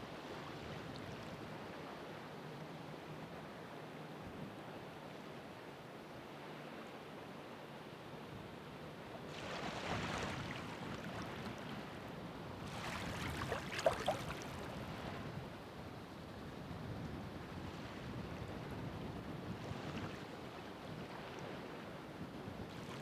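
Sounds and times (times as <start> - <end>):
ocean waves breaking: 9.3 - 15.2
sharp water splashes: 12.8 - 14.5.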